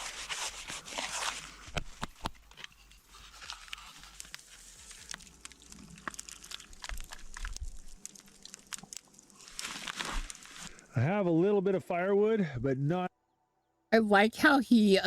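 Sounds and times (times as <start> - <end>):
soft crunching of snow: 0.0 - 10.9.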